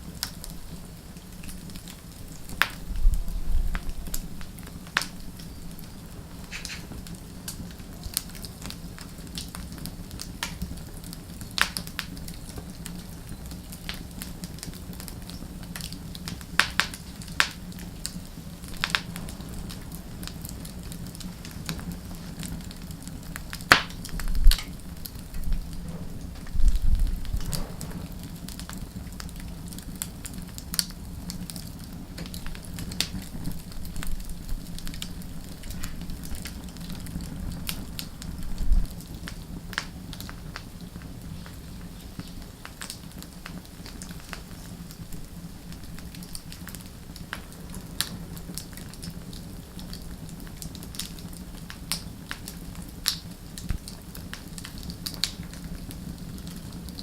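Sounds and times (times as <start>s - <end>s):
wood fire crackling: 0.0s - 57.0s
low hum: 17.2s - 29.5s
low thumps: 18.3s - 22.9s, 23.9s - 28.8s.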